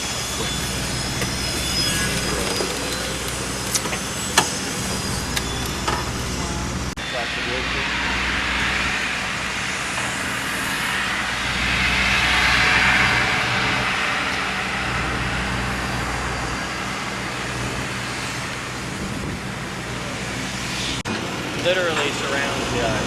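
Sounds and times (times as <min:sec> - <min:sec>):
golf cart motor hum: 0:00.0 - 0:07.0
broad rushing noise: 0:00.0 - 0:23.0.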